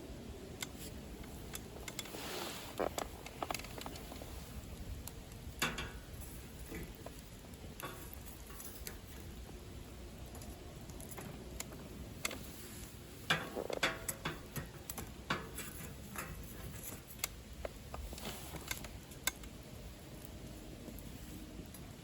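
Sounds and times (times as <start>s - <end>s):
wood fire crackling and popping: 0.0s - 22.0s.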